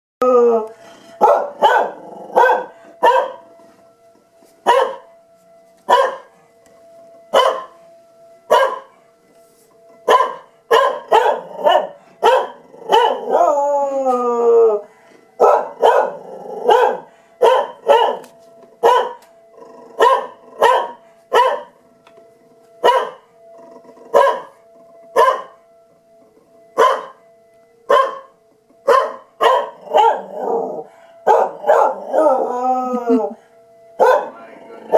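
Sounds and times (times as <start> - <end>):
faint siren tone: 0.2 - 34.9
dog barking: 1.2 - 3.4, 4.7 - 5.1, 5.9 - 6.3, 7.4 - 7.8, 8.5 - 8.9, 10.1 - 13.2, 15.4 - 18.2, 18.8 - 19.2, 20.0 - 21.7, 22.8 - 23.2, 24.1 - 24.5, 25.2 - 25.6, 26.8 - 27.2, 27.9 - 28.3, 28.9 - 30.3, 31.3 - 32.0, 34.0 - 34.4
dog howling: 10.8 - 18.2, 28.9 - 33.4.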